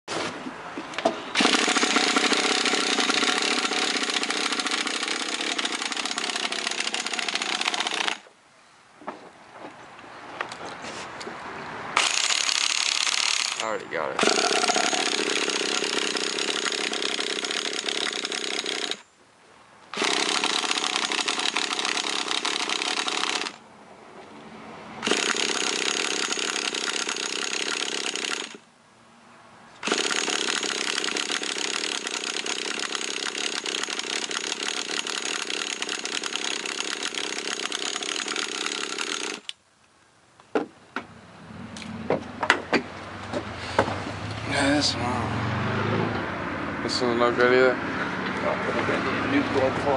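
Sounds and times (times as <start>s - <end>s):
electric starter spinning engine: 1.4s - 8.2s, 12.0s - 13.6s, 14.2s - 19.0s, 19.9s - 23.6s, 25.0s - 28.6s, 29.8s - 39.6s.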